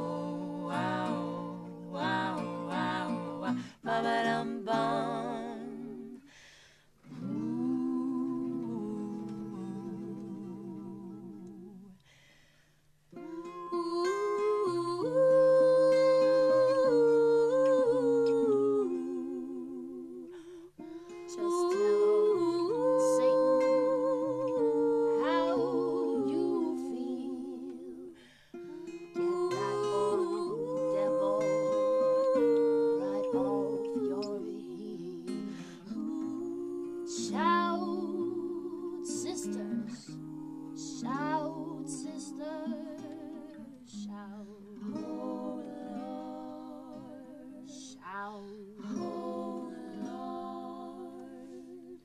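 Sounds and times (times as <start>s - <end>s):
vocal group humming chords: 0.0s - 6.4s, 7.1s - 12.1s, 21.3s - 28.1s, 29.1s - 44.2s, 44.8s - 47.7s, 48.8s - 52.0s.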